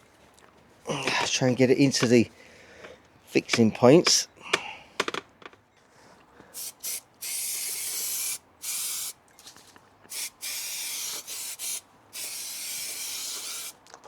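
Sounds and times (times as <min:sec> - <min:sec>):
spray adhesive hissing: 0:06.6 - 0:09.2, 0:10.1 - 0:13.8.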